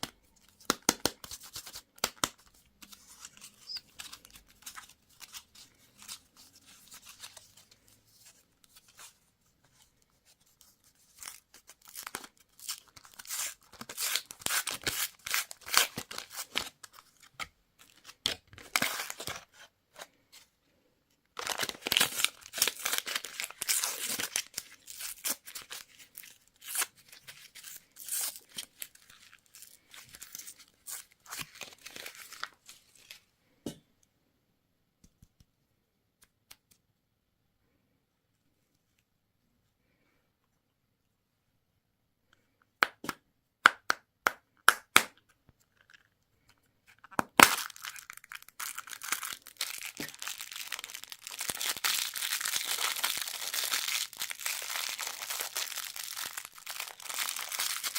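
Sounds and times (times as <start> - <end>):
candy wrappers crinkling: 11.1 - 19.5, 21.4 - 33.2, 45.6 - 57.9.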